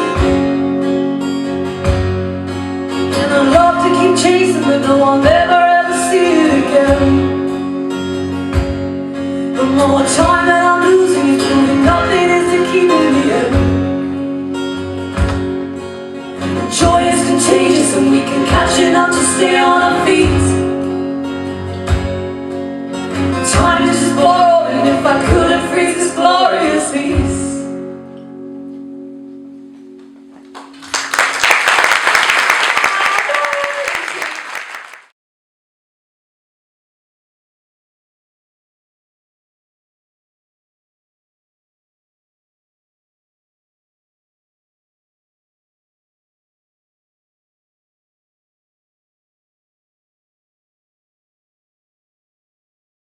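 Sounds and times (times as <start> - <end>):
strummed acoustic guitars: 0.0 - 29.3
person singing: 3.0 - 7.5, 9.5 - 13.6, 16.4 - 20.7, 23.4 - 27.7.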